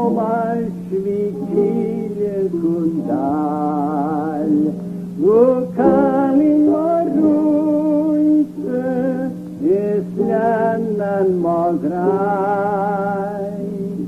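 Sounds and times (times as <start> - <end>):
person singing slow song: 0.0 - 14.0.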